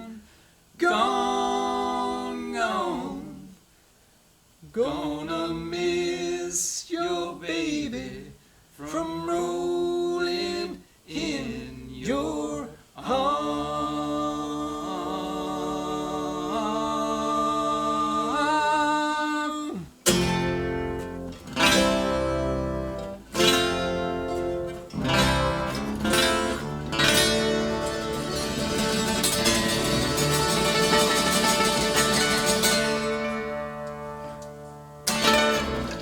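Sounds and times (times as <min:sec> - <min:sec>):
acoustic string band strumming chords: 0:20.0 - 0:36.0.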